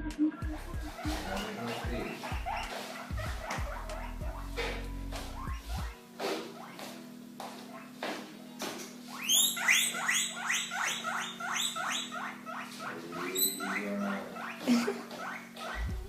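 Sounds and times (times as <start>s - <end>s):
guinea pig squealing: 0.4s - 6.8s, 7.7s - 7.9s, 9.1s - 16.0s.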